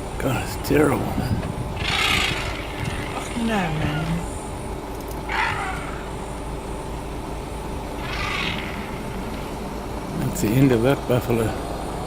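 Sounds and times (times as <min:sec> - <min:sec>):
steady low hum: 0:00.0 - 0:12.0
short animal cries: 0:05.3 - 0:06.1, 0:08.0 - 0:09.1.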